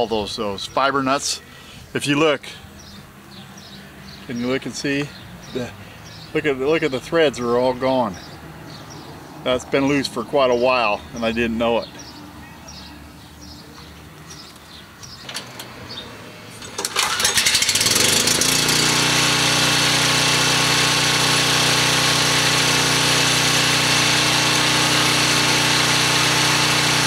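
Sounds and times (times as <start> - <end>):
generator engine starting and running: 14.3 - 27.0.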